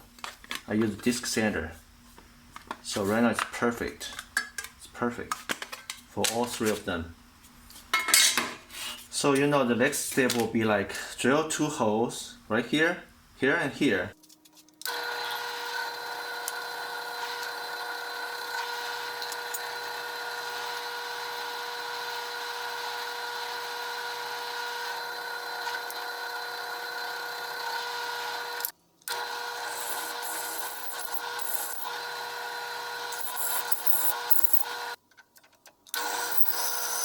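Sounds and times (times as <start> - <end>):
electric drill drilling: 14.9 - 35.0, 36.0 - 37.0.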